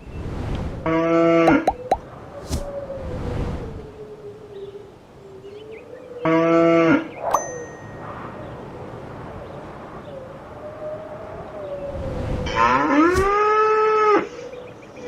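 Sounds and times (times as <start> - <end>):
metallic ding: 7.3 - 8.2
cow mooing: 12.5 - 14.3.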